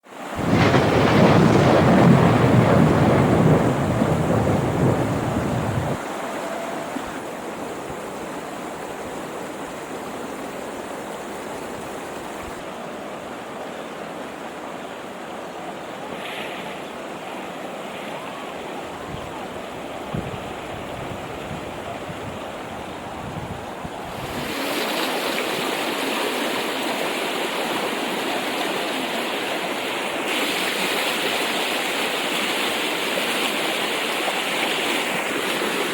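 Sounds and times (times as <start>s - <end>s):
floodwater rushing: 0.0s - 35.9s
wind rumble on microphone: 0.4s - 6.0s, 20.1s - 24.6s.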